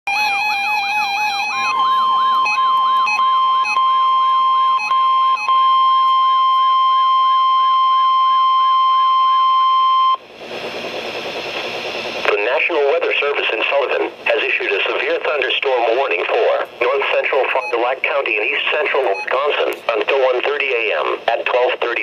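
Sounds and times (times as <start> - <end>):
loud high alarm beep: 0.1 - 10.2, 17.4 - 18.0, 18.7 - 19.6
rising and falling siren tone: 0.1 - 10.2
stepped alternating tone: 0.1 - 12.2.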